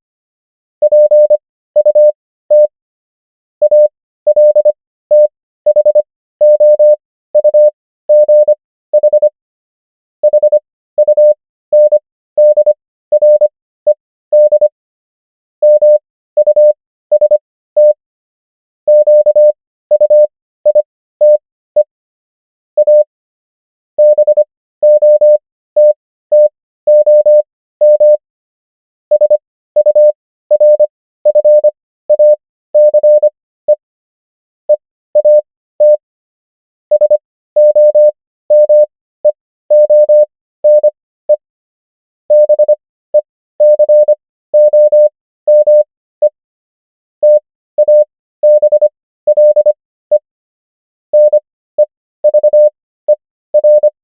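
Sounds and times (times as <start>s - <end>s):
morse code beeps: 0.8s - 2.7s, 3.6s - 9.3s, 10.2s - 14.7s, 15.6s - 18.0s, 18.9s - 21.9s, 22.8s - 23.1s, 24.0s - 28.2s, 29.1s - 33.8s, 34.7s - 36.0s, 36.9s - 41.4s, 42.3s - 46.4s, 47.2s - 50.2s, 51.1s - 54.0s.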